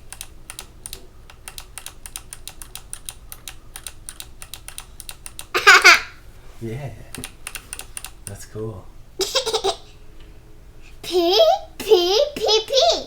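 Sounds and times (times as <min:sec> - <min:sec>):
typing on clicky mechanical keyboard: 0:00.0 - 0:05.6, 0:07.1 - 0:08.4.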